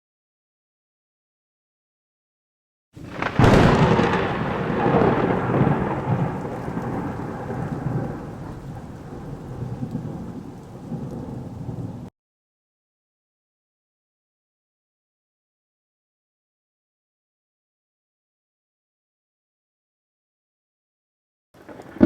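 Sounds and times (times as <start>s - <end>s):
rain hissing: 3.0s - 12.1s, 21.6s - 22.0s
thunderclap and rolling rumble: 3.0s - 12.1s, 21.6s - 22.0s.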